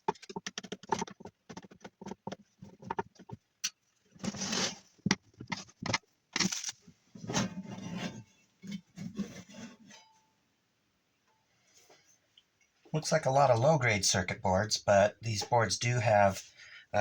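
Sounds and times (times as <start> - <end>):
electronic unit casing being handled: 4.2 - 7.6.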